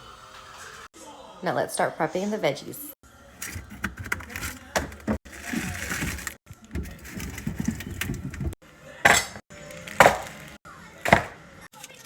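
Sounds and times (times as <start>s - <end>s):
kitchenware clattering: 3.4s - 11.4s.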